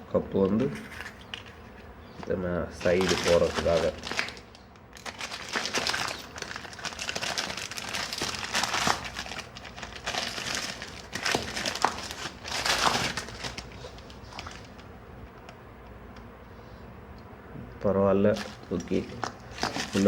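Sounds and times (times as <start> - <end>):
packaging crinkling and rustling: 0.5 - 1.7, 2.8 - 14.9, 18.3 - 20.0.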